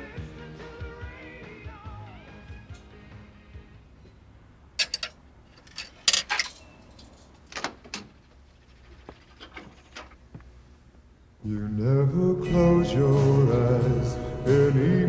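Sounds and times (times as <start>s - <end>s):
sharp metallic clicks and clatters: 4.8s - 10.2s.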